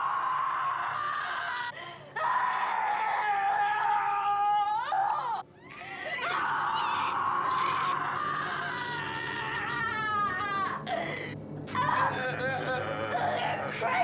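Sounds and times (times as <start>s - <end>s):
woman screaming: 0.0s - 14.0s
woman gasping for breath: 10.8s - 11.4s.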